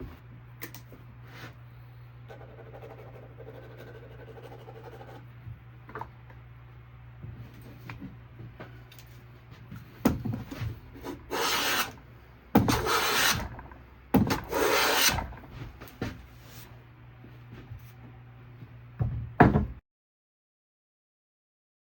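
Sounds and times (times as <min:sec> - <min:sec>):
hand plane shaving wood: 0:11.0 - 0:12.0, 0:12.6 - 0:15.6.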